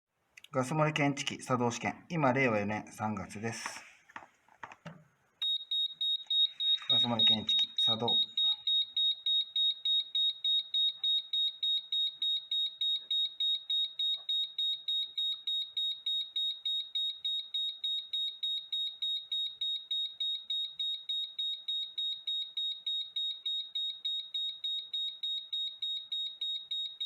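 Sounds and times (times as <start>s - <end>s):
gas detector alarm beeping: 5.4s - 27.0s.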